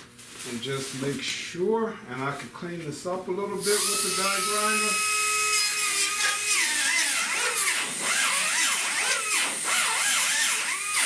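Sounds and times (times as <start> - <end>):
die grinder on sheet steel: 3.6 - 11.0.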